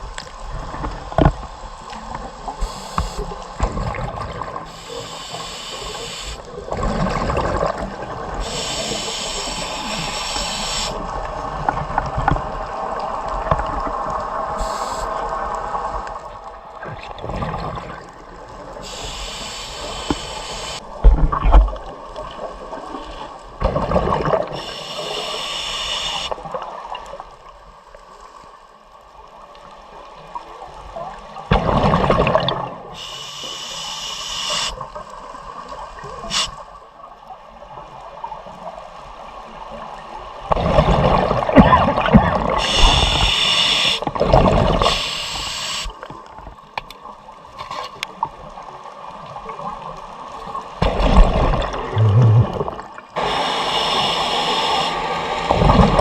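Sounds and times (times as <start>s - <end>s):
hissing regulator inhalations: 2.6s - 3.4s, 4.7s - 6.5s, 8.4s - 11.1s, 14.6s - 15.2s, 18.8s - 20.8s, 24.6s - 26.4s, 33.0s - 34.8s, 42.6s - 44.1s, 44.8s - 46.0s, 53.2s - 55.5s
exhaled bubbles: 5.8s - 8.8s, 31.5s - 32.8s, 40.5s - 45.1s, 50.8s - 56.0s.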